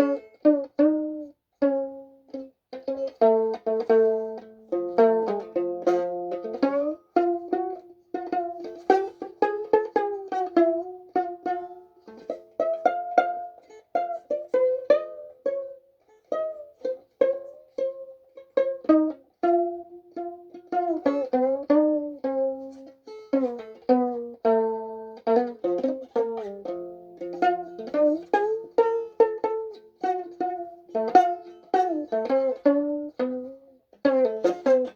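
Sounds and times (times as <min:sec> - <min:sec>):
violin plucked notes: 0:00.0 - 0:34.9.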